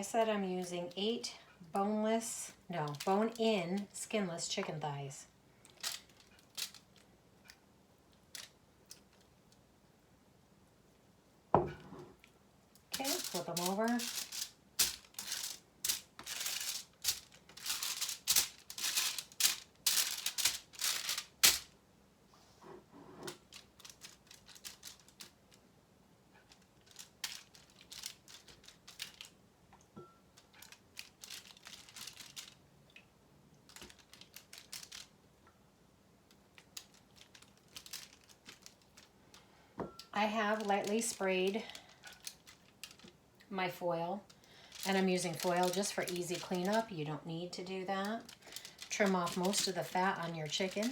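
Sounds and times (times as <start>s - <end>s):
chicken rustling on foil: 12.9s - 21.7s, 23.3s - 25.4s, 26.4s - 29.4s, 30.4s - 32.6s, 33.7s - 35.1s, 36.5s - 43.1s, 43.7s - 50.9s.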